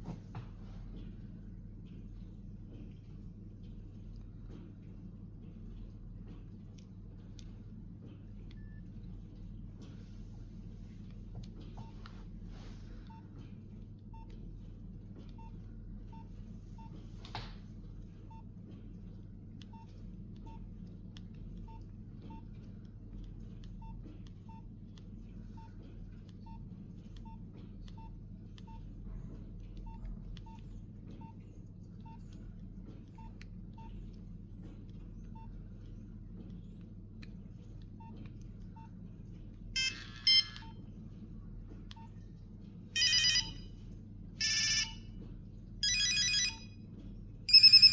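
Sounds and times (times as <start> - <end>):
faint low hum: 0.0 - 47.9
phone keypad beeps: 39.8 - 40.7, 43.0 - 43.6, 44.4 - 45.0, 45.8 - 46.7, 47.5 - 47.9
phone ringtone: 39.8 - 40.7, 43.0 - 43.7, 44.4 - 45.0, 45.8 - 46.7, 47.5 - 47.9.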